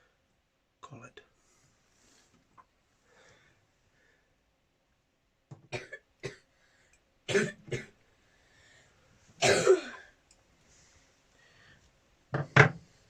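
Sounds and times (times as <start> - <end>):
person coughing: 5.7 - 6.4, 7.3 - 8.0, 9.4 - 10.1.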